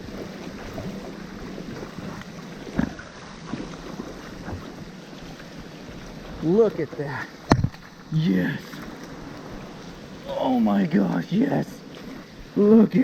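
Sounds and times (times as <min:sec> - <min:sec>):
river water rushing: 0:00.0 - 0:13.0
brief knock: 0:07.5 - 0:07.8.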